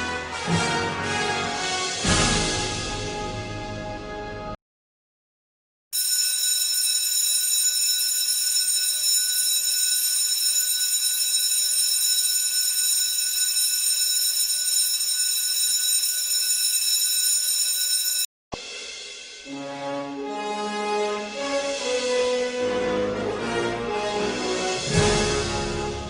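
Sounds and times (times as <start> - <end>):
school bell ringing: 6.0 - 18.3.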